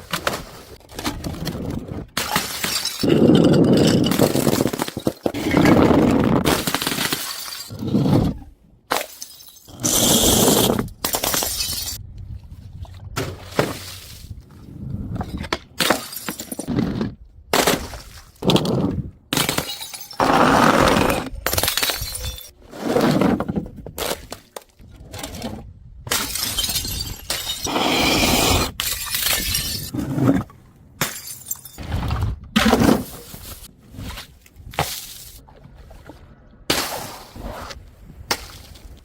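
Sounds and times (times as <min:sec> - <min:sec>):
glass bottles smashing: 0:02.2 - 0:05.4, 0:06.5 - 0:07.8, 0:09.0 - 0:12.0, 0:15.8 - 0:16.7, 0:19.4 - 0:20.7, 0:21.5 - 0:22.6, 0:26.1 - 0:29.9, 0:31.0 - 0:31.8.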